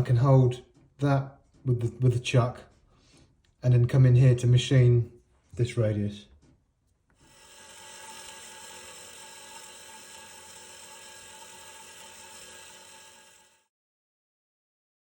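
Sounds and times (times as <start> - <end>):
metal lathe whining: 7.2 - 13.7.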